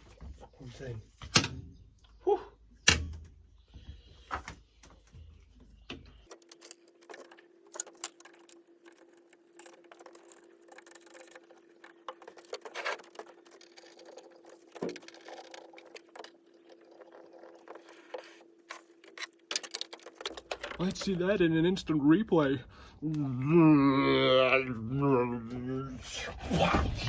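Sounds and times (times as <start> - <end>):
metal parts clicking and rattling: 6.3 - 21.2.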